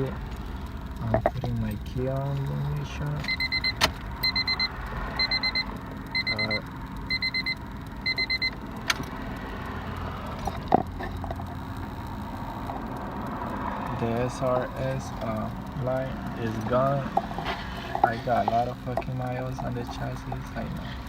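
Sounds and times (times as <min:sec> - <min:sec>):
dashboard warning chime beeping: 0:03.0 - 0:08.9
sharp clicks: 0:07.5 - 0:16.4.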